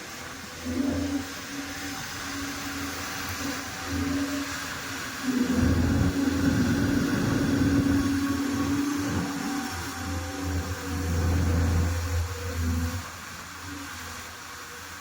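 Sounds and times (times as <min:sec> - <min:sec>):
heavy diesel engine rumbling: 0:05.0 - 0:13.0.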